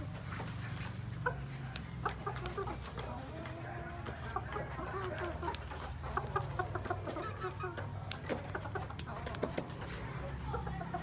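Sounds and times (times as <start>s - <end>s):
chickens clucking: 0.0s - 11.0s
steady low hum: 0.0s - 11.0s
sharp clicks: 1.7s - 2.8s, 8.0s - 9.7s.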